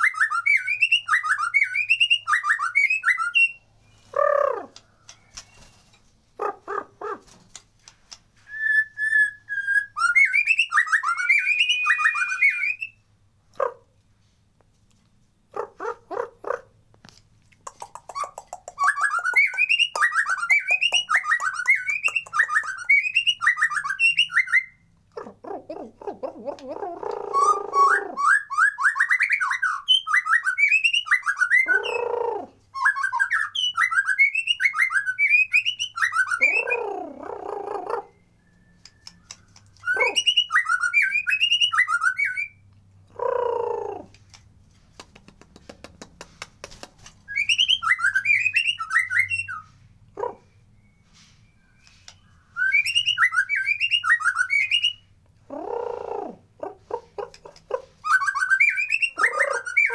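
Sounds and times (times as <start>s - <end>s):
bird singing high twittering phrases: 17.8s - 24.8s, 27.0s - 42.6s, 57.6s - 59.9s.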